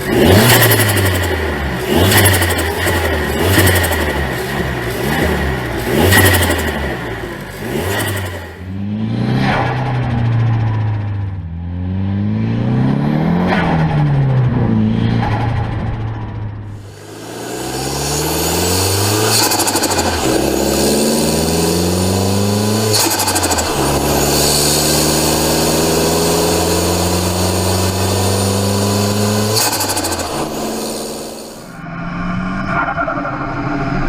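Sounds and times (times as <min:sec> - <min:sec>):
car engine accelerating: 0:00.0 - 0:34.0
turbo flutter chattering: 0:16.9 - 0:31.7.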